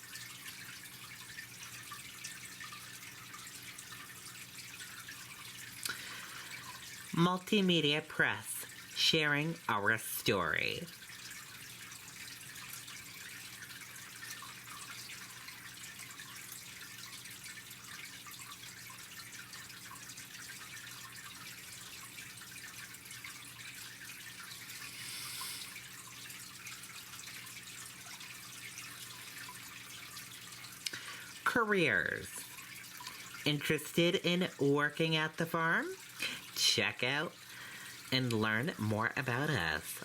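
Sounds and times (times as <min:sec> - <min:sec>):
low electrical hum: 0:00.0 - 0:40.0
background hiss: 0:24.7 - 0:25.9.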